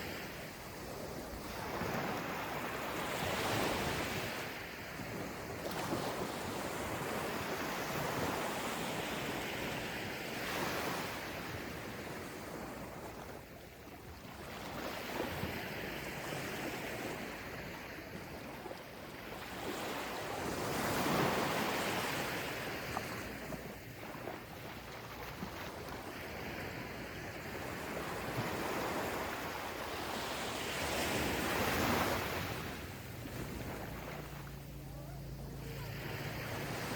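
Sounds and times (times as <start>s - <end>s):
ocean waves breaking on beach: 0.0s - 36.9s.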